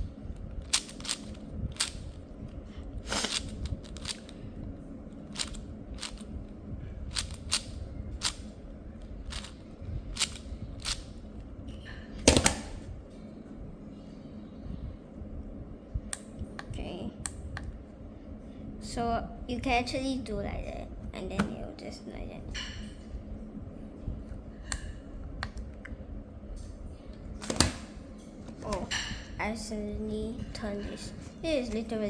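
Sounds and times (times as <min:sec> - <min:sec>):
puzzle cube clicking: 0:00.6 - 0:02.1, 0:03.1 - 0:04.3, 0:05.3 - 0:06.2, 0:07.1 - 0:08.4, 0:09.3 - 0:09.5, 0:10.1 - 0:11.1.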